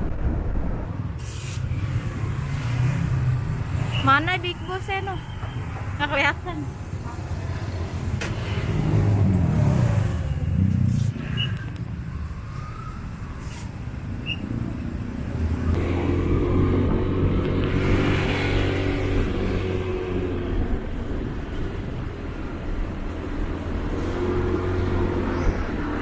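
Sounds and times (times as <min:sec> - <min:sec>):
engine revving: 0:01.3 - 0:05.0, 0:07.3 - 0:11.6, 0:14.5 - 0:20.9, 0:23.4 - 0:26.0
steady engine drone: 0:06.3 - 0:26.0.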